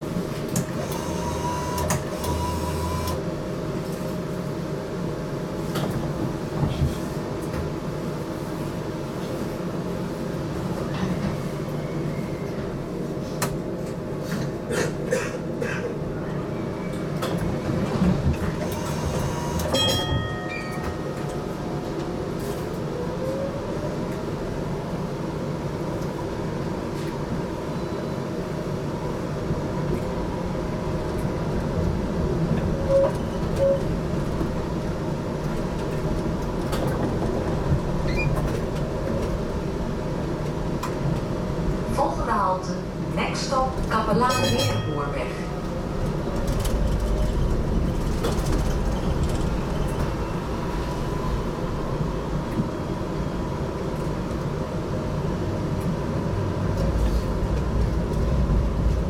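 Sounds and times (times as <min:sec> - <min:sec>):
tram hum and rumble: 0:00.0 - 0:59.0
brief tone: 0:00.9 - 0:03.2, 0:18.7 - 0:21.4, 0:27.7 - 0:28.3, 0:32.8 - 0:33.9.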